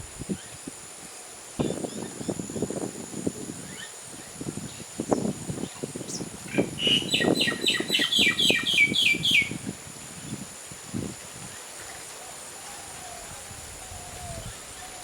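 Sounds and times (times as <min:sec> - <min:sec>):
small bird chirping: 0:05.7 - 0:09.6.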